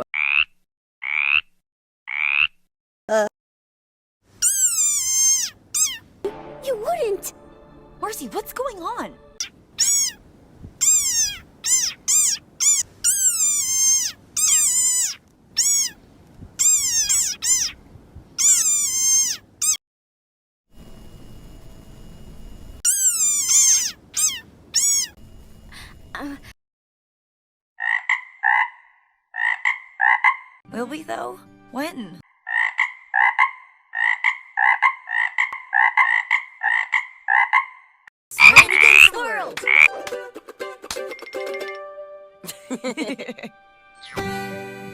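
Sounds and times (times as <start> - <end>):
frog croaking double chirp: 0.0 - 1.5, 2.1 - 2.6, 9.8 - 10.2, 32.2 - 39.1, 39.7 - 39.9
high-pitched frog squeaks: 0.0 - 2.7, 4.4 - 6.0, 9.4 - 10.2, 10.8 - 16.0, 16.6 - 17.8, 18.4 - 19.8, 22.8 - 25.2, 27.8 - 30.6, 32.2 - 39.1, 39.7 - 39.9.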